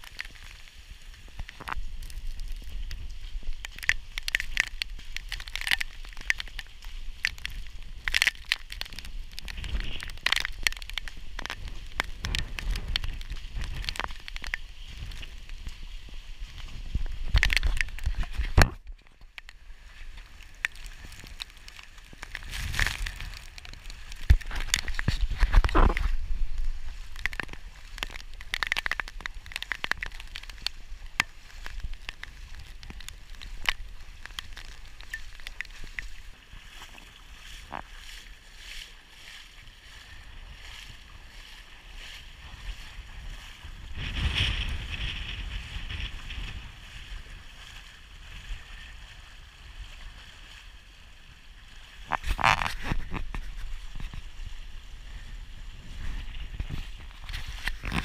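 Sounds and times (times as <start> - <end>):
wind gusting across microphone: 40.3 - 48.9.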